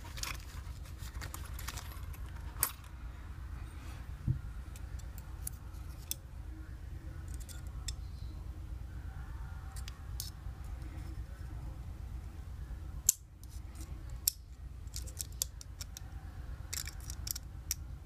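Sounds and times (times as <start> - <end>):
metal pistol parts clicking: 7.3 - 8.0, 13.0 - 16.0, 16.7 - 17.8.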